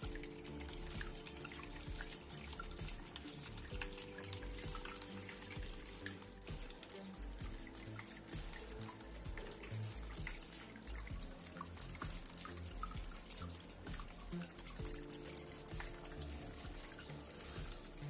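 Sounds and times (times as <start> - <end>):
music with low beat: 0.0 - 18.0
water dripping and trickling: 0.0 - 18.0.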